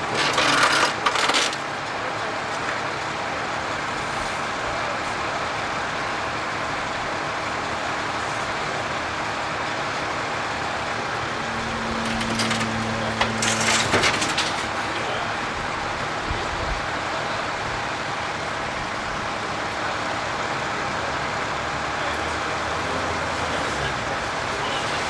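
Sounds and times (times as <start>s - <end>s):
heavy demolition machinery running: 0.0s - 25.0s.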